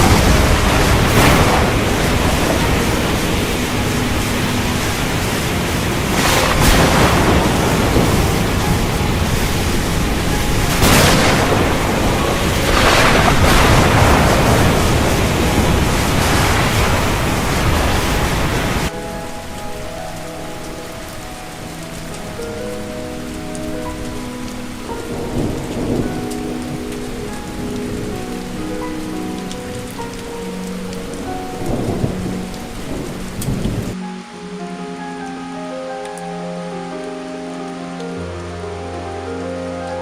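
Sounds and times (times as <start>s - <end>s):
thunder rolling: 0.0s - 34.0s
heavy rain: 0.0s - 40.0s.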